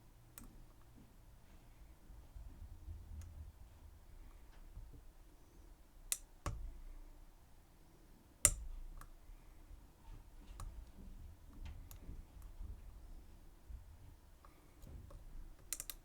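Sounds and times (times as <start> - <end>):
lock picks clicking in lock: 15.6 - 16.0.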